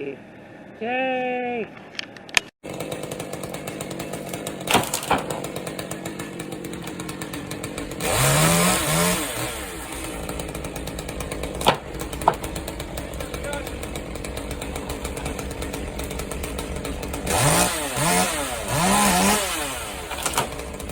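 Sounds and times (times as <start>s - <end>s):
chainsaw revving: 2.6s - 20.9s
sharp knocks: 4.3s - 5.7s, 11.4s - 13.2s.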